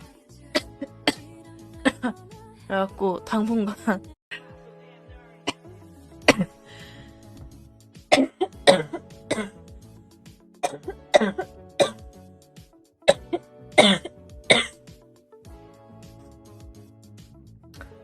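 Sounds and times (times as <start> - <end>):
background music: 0.0 - 18.0
woman coughing: 6.3 - 6.6, 8.1 - 9.6, 10.6 - 12.0, 13.1 - 14.8.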